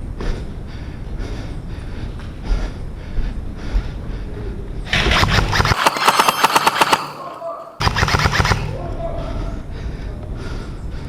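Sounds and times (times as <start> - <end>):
low wind rumble: 0.0 - 5.6, 8.7 - 11.0
airsoft gunfire burst: 4.9 - 8.8.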